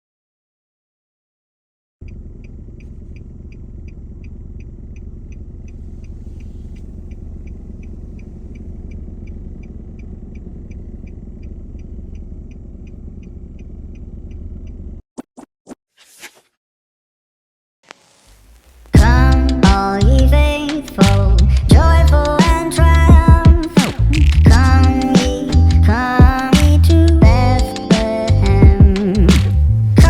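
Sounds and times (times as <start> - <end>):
sharp clicks: 2.0 - 14.8, 23.6 - 28.6
regular light ticking: 2.0 - 14.9, 19.0 - 30.0
low mechanical rumble: 2.0 - 15.0, 18.3 - 30.0.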